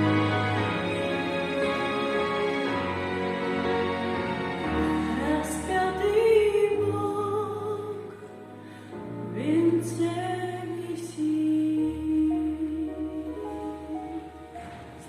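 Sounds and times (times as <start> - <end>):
slow instrumental accompaniment: 0.0 - 15.0
woman singing: 5.0 - 8.3, 9.2 - 14.6.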